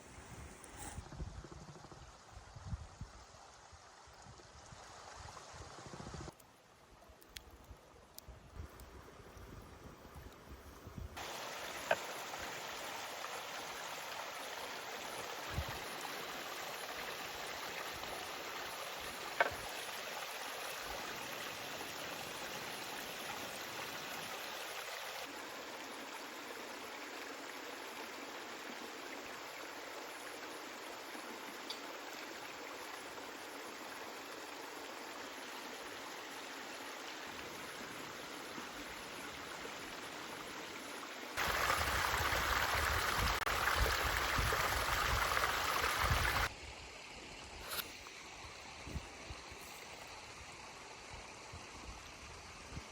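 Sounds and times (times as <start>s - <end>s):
flowing water rushing: 11.2s - 46.7s.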